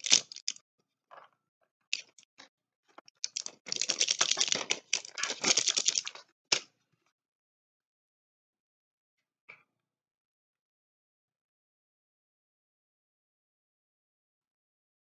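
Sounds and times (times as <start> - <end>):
packaging crinkling and clicking: 0.0 - 0.5, 3.2 - 6.6.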